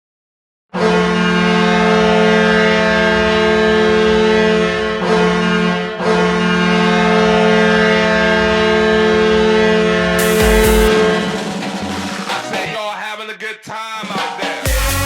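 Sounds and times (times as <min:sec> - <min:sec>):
goal horn blowing: 0:00.7 - 0:12.7.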